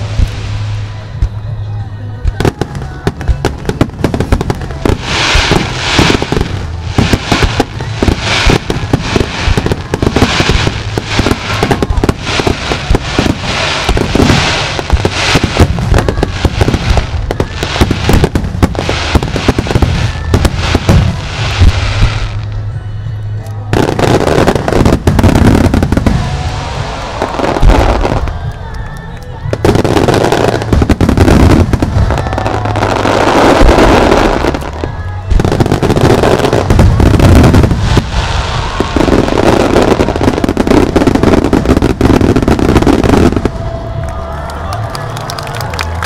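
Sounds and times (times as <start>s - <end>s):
fireworks bursting: 0.0s - 22.8s, 23.6s - 46.0s
loud music: 0.0s - 46.0s.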